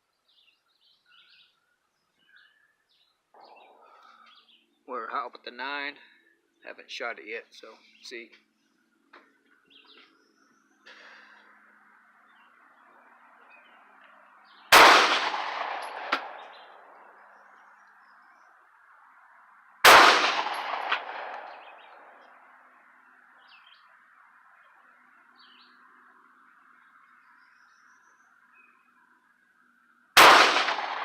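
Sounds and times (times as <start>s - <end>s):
gunshots with echoing decay: 14.7s - 17.2s, 19.8s - 22.4s, 30.2s - 31.0s.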